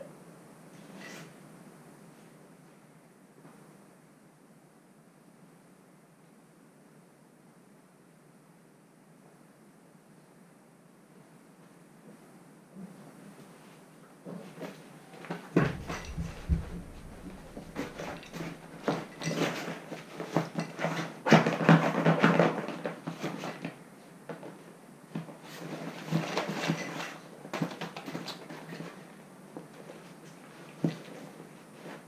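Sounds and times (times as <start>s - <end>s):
puppies scuffling and knocking: 14.3s - 23.7s.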